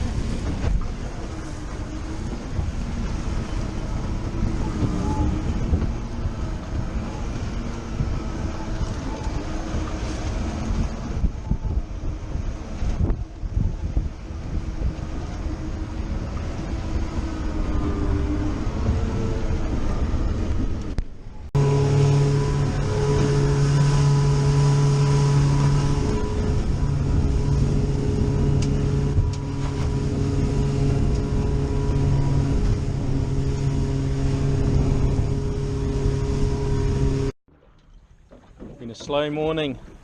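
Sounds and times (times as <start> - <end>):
motorboat engine: 0.0 - 40.0
water noise: 0.0 - 40.0
wind: 0.0 - 40.0.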